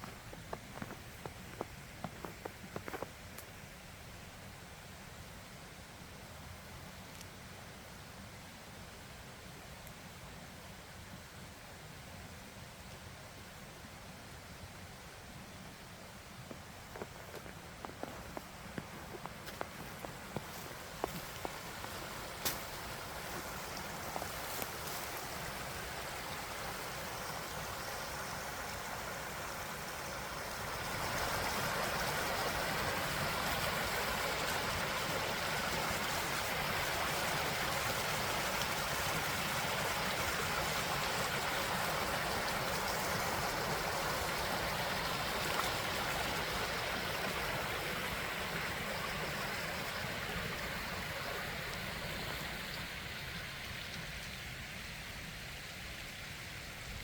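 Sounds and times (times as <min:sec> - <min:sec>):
creek water rushing: 0:00.0 - 0:08.1, 0:13.0 - 0:57.0.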